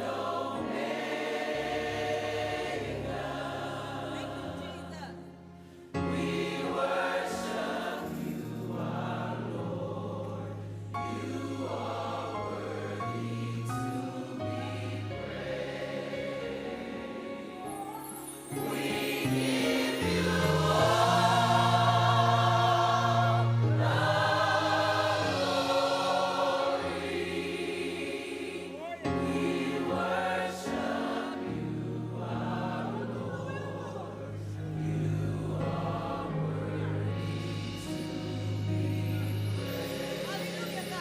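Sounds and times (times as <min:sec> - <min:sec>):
choir singing: 0:00.0 - 0:41.0
instrumental accompaniment: 0:34.6 - 0:41.0.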